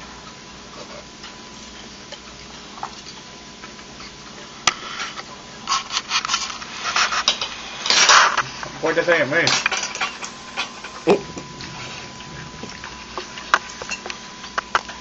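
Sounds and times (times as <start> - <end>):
utensils clinking against dishes: 7.0 - 8.4, 9.4 - 15.0.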